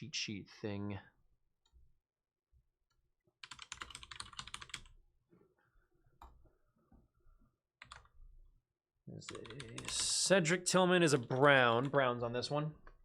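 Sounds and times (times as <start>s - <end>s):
typing on computer keyboard: 3.4s - 5.0s, 7.8s - 8.2s, 9.3s - 10.2s.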